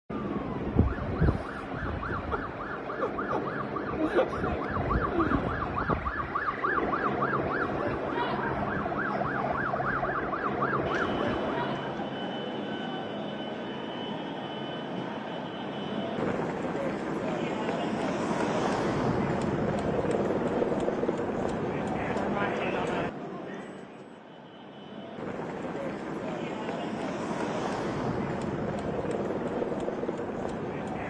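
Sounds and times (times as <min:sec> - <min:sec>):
emergency siren yelping: 0:00.1 - 0:15.3
street noise: 0:00.1 - 0:31.0.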